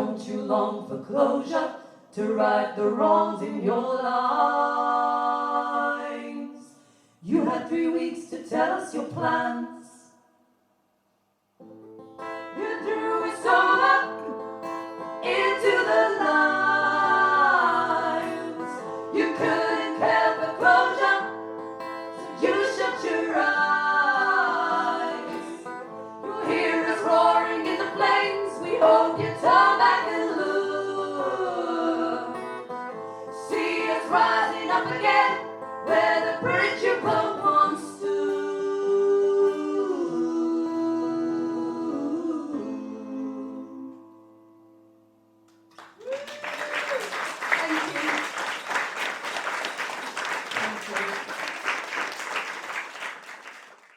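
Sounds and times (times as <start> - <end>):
plucked acoustic guitar: 11.6 - 41.2
person singing: 33.4 - 44.1.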